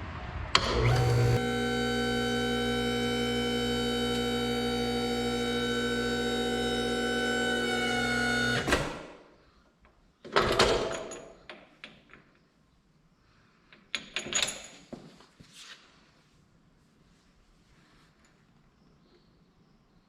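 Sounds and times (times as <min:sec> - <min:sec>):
pump motor hum: 0:00.5 - 0:09.0
motor cutting off with clunk: 0:00.6 - 0:09.1.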